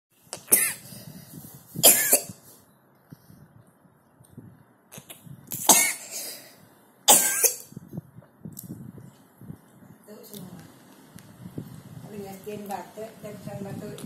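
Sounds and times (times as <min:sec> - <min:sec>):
child coughing: 0:00.4 - 0:00.8, 0:01.8 - 0:02.4, 0:05.6 - 0:06.4, 0:07.1 - 0:07.7.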